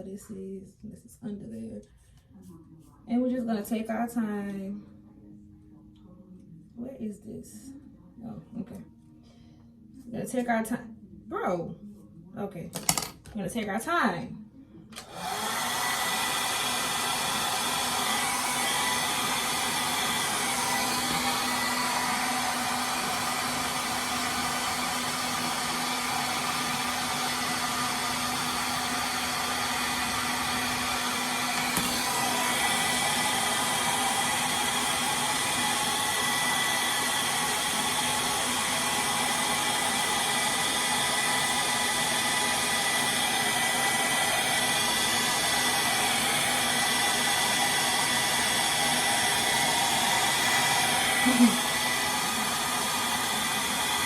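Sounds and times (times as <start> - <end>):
hair dryer blowing: 14.9 - 54.0.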